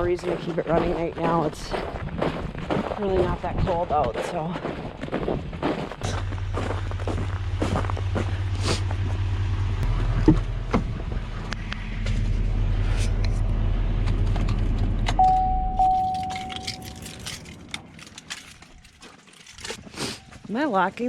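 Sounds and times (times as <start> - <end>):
truck engine idling: 5.6 - 18.7
electronic warning chime: 15.2 - 17.2.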